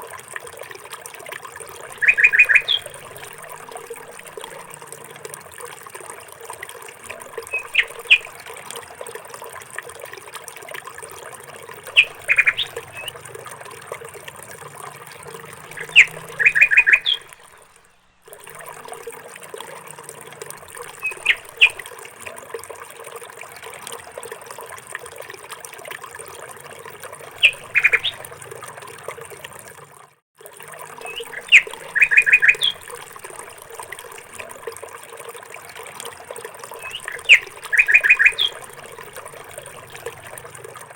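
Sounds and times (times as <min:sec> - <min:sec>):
trickle of running water: 0:00.0 - 0:40.9
small birds chirping: 0:01.9 - 0:05.1, 0:07.3 - 0:08.4, 0:11.6 - 0:14.2, 0:14.8 - 0:17.8, 0:20.8 - 0:21.8, 0:27.3 - 0:28.6, 0:31.0 - 0:33.0, 0:36.7 - 0:40.6.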